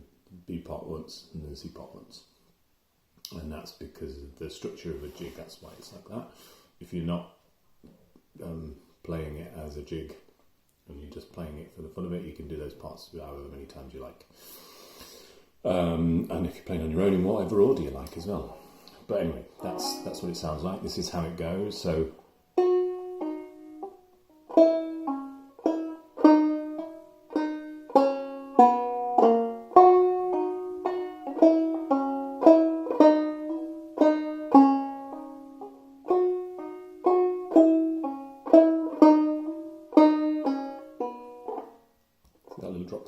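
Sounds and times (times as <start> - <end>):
banjo picking a melody: 15.6 - 43.0.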